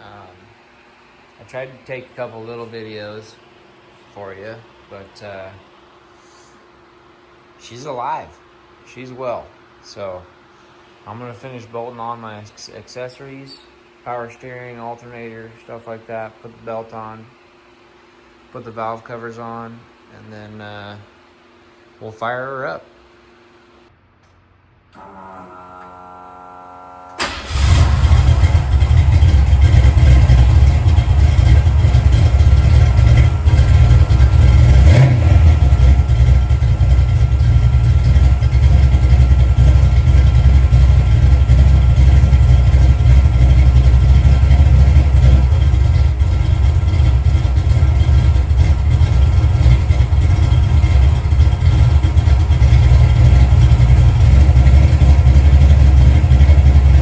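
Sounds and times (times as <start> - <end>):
engine starting and running loud: 24.9 - 57.0.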